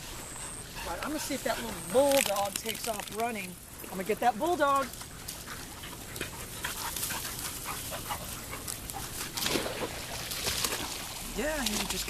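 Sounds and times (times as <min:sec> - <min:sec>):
dog panting: 0:00.0 - 0:02.2, 0:04.6 - 0:09.4.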